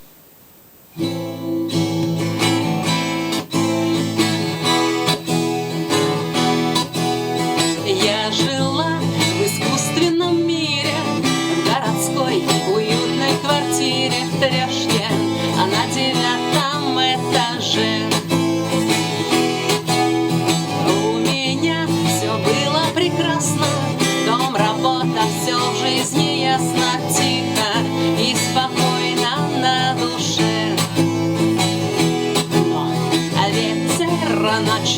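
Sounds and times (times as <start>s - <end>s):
acoustic guitar playing: 0.9s - 34.9s
woman singing: 7.4s - 34.9s.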